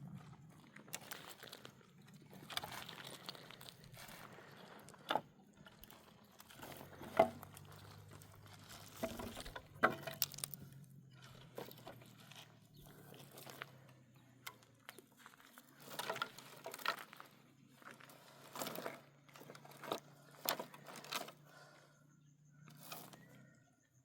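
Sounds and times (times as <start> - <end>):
handling knocks and rustling: 0.9 - 21.4.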